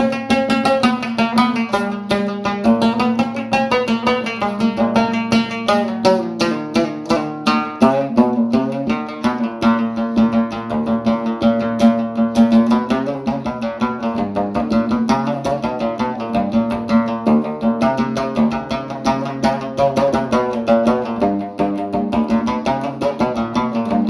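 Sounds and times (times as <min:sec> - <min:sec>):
plucked string instrument music: 0:00.0 - 0:24.0.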